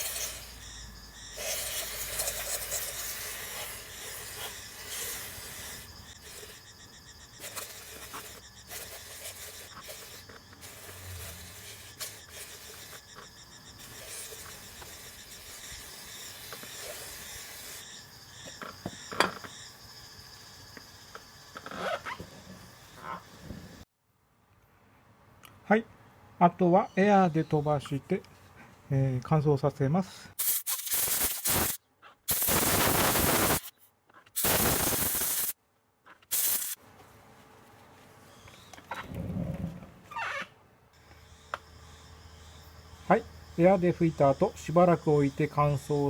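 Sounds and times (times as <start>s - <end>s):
aerosol spray hissing: 1.4s - 6.7s, 13.8s - 17.9s, 30.4s - 33.7s, 34.4s - 35.6s, 36.3s - 36.8s.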